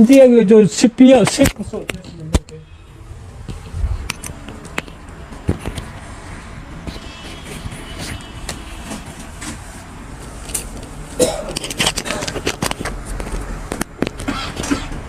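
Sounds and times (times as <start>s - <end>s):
steady low rumble: 2.6s - 6.8s.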